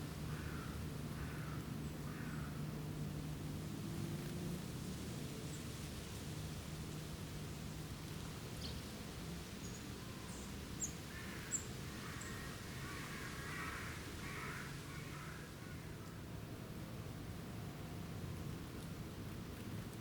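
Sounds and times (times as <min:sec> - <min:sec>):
harsh raspy crow-like call: 0:00.3 - 0:02.6, 0:11.1 - 0:16.0.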